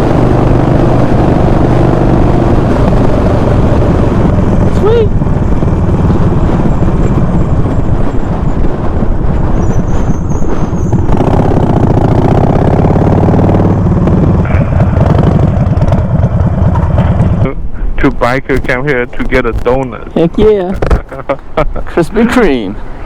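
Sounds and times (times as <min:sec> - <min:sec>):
motorcycle engine running: 0:00.0 - 0:17.6.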